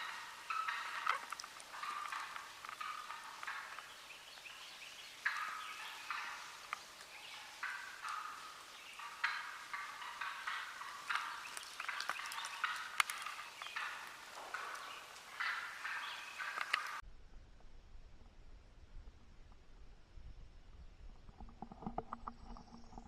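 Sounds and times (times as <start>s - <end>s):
turkeys gobbling: 0.0s - 17.0s.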